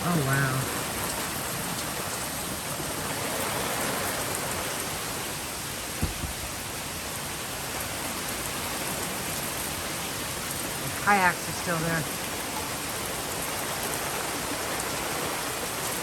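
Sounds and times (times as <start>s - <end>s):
heavy rain falling: 0.0s - 16.0s
short low thump: 6.0s - 6.5s.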